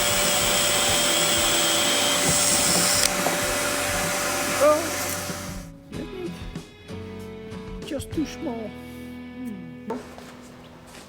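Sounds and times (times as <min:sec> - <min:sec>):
electric motor tool running: 0:00.0 - 0:05.7.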